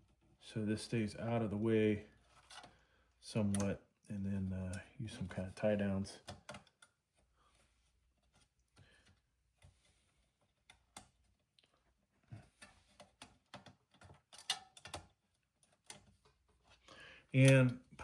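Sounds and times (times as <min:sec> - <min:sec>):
small clicks and taps on plastic: 0:03.5 - 0:03.9, 0:06.2 - 0:07.1, 0:10.4 - 0:16.6.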